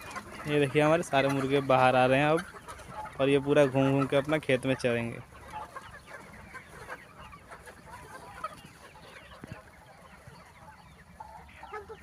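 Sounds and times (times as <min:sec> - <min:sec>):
chickens clucking: 0:00.0 - 0:12.0.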